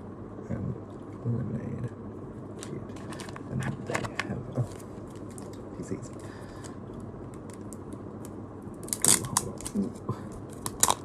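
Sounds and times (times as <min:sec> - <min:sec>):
packaging tearing rustle: 0:02.6 - 0:11.0.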